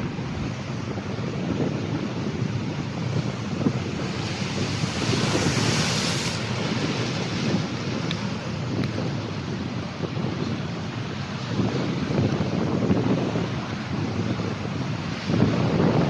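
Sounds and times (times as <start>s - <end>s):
surf breaking and washing: 0.0s - 16.0s
wind buffeting microphone: 0.0s - 16.0s
bright hissing wash: 3.8s - 8.0s.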